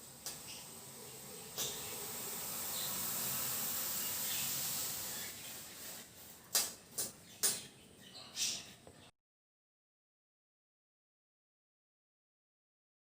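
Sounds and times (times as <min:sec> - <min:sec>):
solder flux sizzling: 0:00.0 - 0:07.5.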